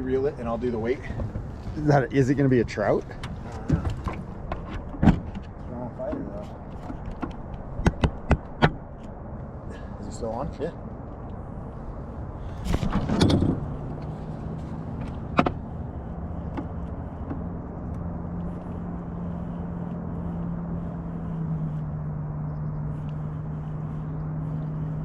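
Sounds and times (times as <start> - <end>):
boat motor hum: 0.0 - 25.0.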